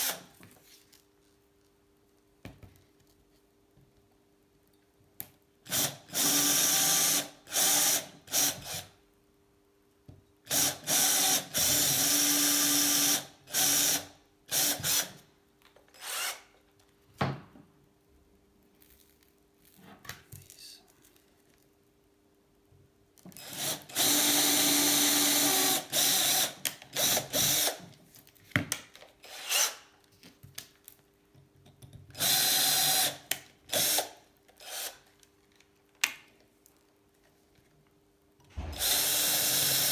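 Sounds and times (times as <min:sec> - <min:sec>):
electric drill boring into metal: 0:23.5 - 0:27.8, 0:32.2 - 0:33.2, 0:38.6 - 0:39.9.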